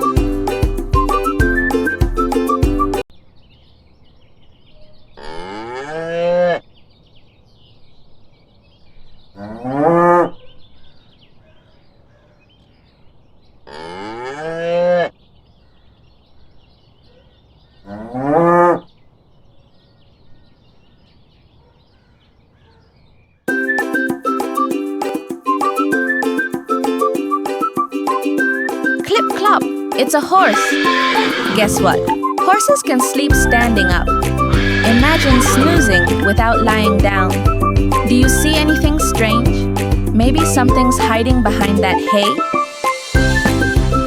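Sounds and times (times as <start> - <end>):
cow mooing: 30.3 - 32.1, 34.4 - 36.3.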